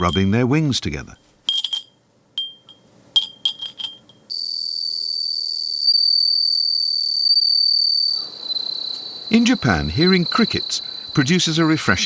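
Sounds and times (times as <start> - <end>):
glass wind bell ringing: 0.0 - 0.4, 1.5 - 4.3
cricket trill: 4.3 - 12.0.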